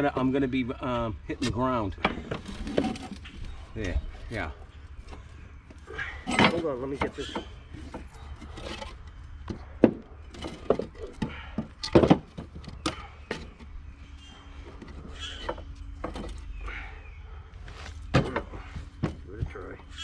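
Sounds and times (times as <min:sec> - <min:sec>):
tools knocking and clunking: 0:06.0 - 0:13.7, 0:14.6 - 0:16.6, 0:18.0 - 0:19.7.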